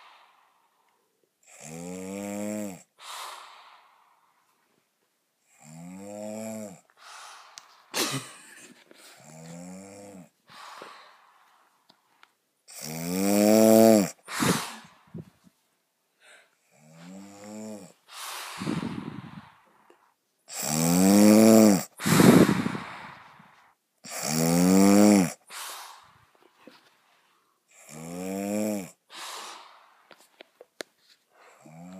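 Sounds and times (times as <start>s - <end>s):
woman snoring: 0.0s - 0.6s, 1.4s - 3.8s, 5.5s - 10.9s, 12.7s - 15.3s, 16.7s - 19.6s, 20.5s - 26.8s, 27.7s - 29.9s, 31.4s - 31.9s.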